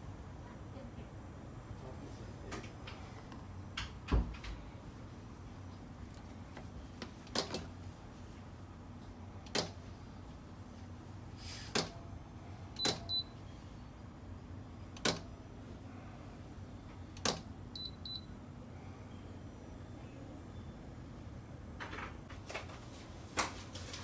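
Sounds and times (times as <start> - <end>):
washing machine beeps: 12.8 - 13.8, 17.3 - 18.4.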